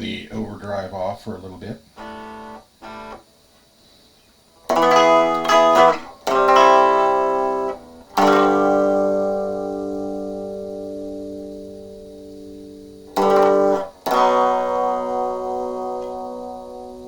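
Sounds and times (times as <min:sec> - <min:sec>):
clean electric guitar chords: 0:04.7 - 0:17.0.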